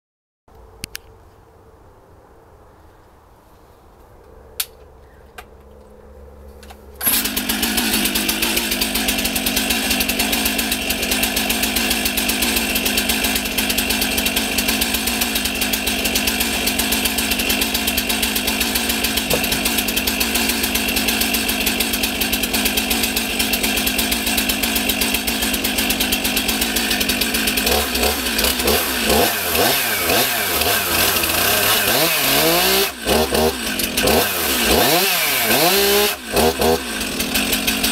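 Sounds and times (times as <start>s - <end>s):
chainsaw engine running: 6.7s - 37.9s.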